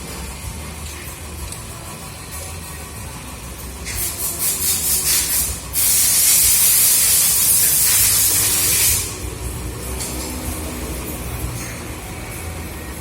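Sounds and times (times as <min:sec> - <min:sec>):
pressurised spray hissing: 0:03.8 - 0:09.2.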